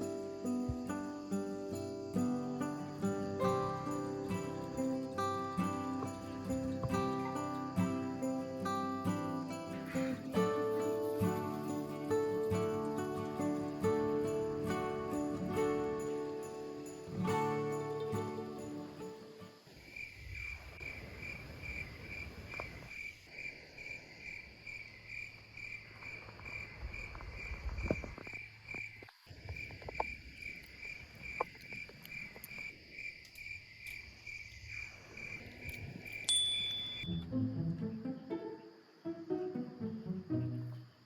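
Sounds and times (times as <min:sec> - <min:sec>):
insect chirping: 0:00.0 - 0:41.0
short high beep: 0:36.3 - 0:37.2.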